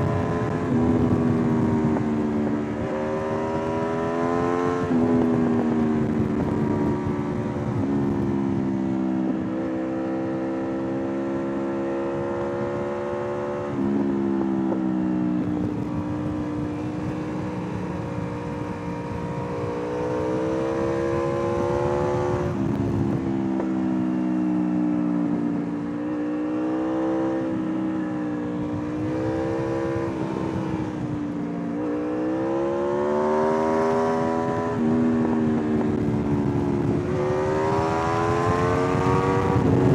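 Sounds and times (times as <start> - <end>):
wind rush: 0.0 - 11.0, 15.4 - 23.7, 27.4 - 39.9
motorcycle engine accelerating: 0.0 - 39.9.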